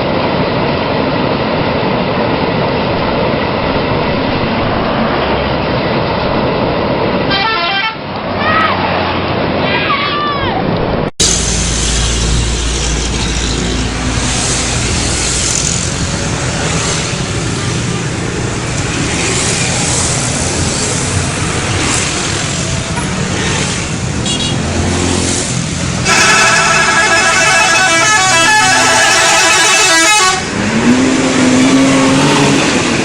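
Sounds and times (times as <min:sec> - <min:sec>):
heavy vehicle engines passing: 0:00.0 - 0:33.0
road traffic noise: 0:00.0 - 0:33.0
multi-tone bus horn tune: 0:07.3 - 0:08.1, 0:24.2 - 0:24.6, 0:26.0 - 0:32.2.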